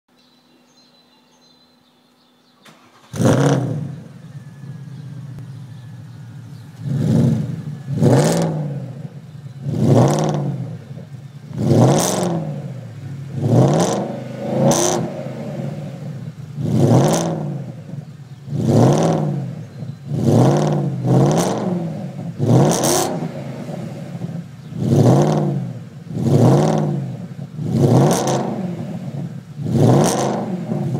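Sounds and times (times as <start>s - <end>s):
car engine revving: 2.7s - 30.9s.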